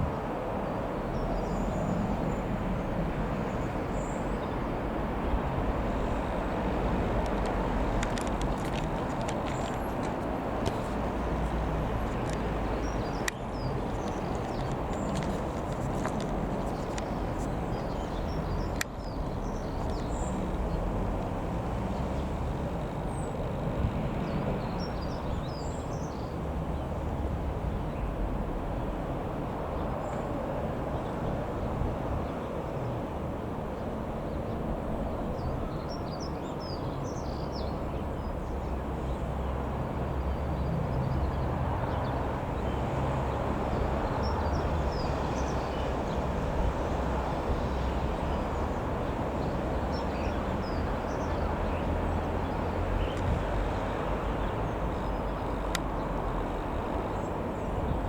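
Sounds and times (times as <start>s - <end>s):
small birds chirping: 7.9s - 20.9s, 47.5s - 58.0s.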